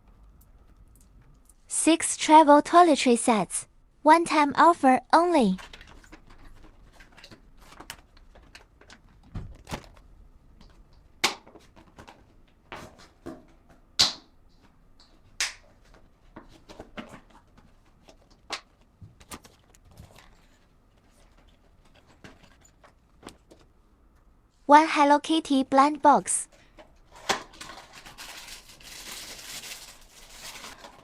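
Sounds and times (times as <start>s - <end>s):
packaged items handled: 5.6s - 13.5s, 15.6s - 23.8s, 26.5s - 31.0s.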